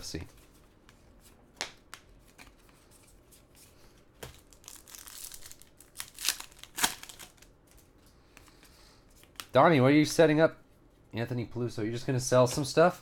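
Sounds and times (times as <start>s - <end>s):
wrapper crinkling and tearing: 4.3s - 7.8s.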